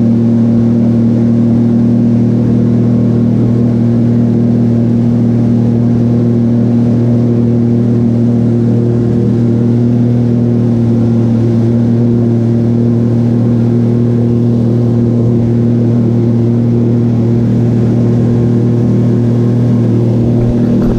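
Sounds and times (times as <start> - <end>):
jet ski engine droning: 0.0 - 20.9.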